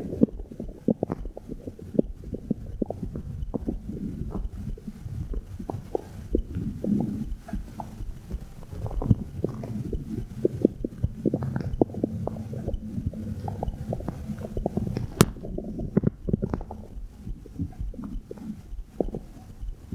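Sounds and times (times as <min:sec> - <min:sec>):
stomach gurgling and rumbling: 0:00.0 - 0:19.9
sharp click: 0:15.0 - 0:15.4.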